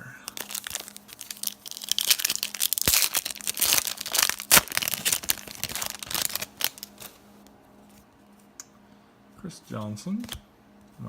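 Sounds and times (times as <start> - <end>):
plastic wrapper tearing and crinkling: 0.3 - 7.2.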